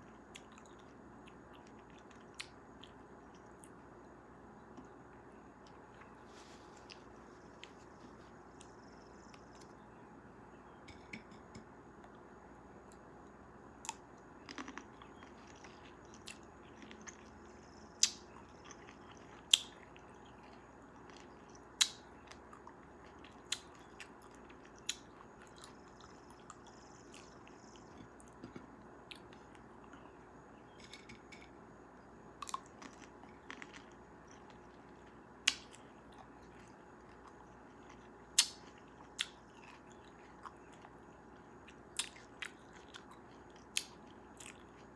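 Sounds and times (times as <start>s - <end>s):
chewing cherries: 0.0s - 3.9s, 4.6s - 9.9s, 10.9s - 44.9s.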